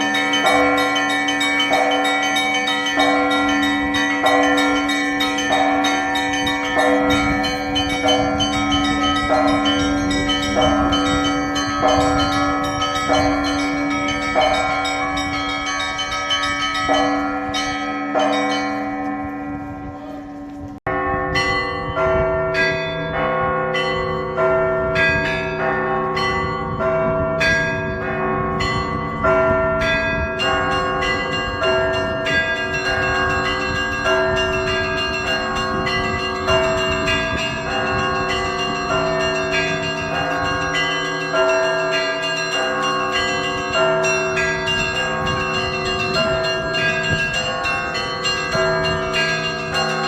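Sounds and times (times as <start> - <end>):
small bells struck in a peal: 0.0 - 20.1, 20.9 - 50.0
church bells ringing: 0.0 - 50.0
hum of deep bells: 0.0 - 50.0.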